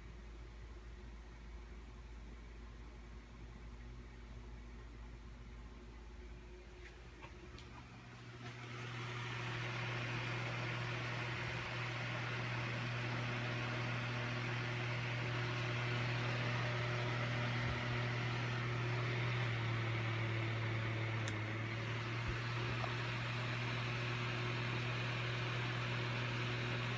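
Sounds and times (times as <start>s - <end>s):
electric fan whooshing: 8.0s - 26.9s.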